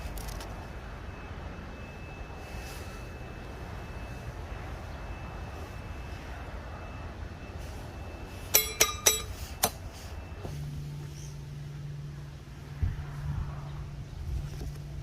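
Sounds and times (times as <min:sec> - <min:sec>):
low outdoor rumble: 0:00.0 - 0:15.0
metal camping gear clinking: 0:08.5 - 0:09.6.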